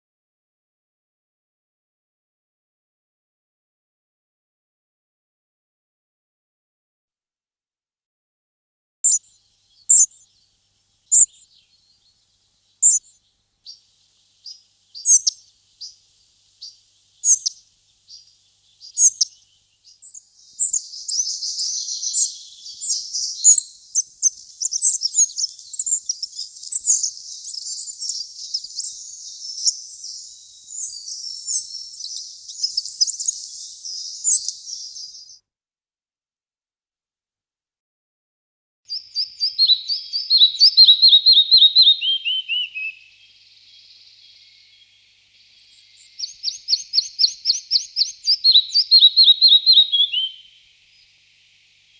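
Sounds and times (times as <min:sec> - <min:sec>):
songbird calling and twittering: 0:09.0 - 0:35.4, 0:38.9 - 0:51.9.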